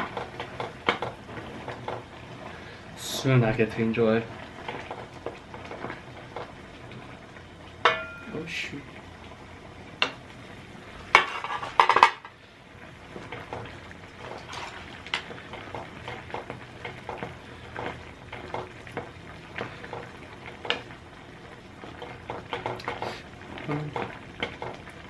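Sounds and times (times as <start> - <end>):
food being stirred: 0.0 - 2.2, 11.1 - 12.3, 13.1 - 20.9, 21.8 - 25.0
utensils clattering against a pot: 11.1 - 12.4, 13.2 - 18.8.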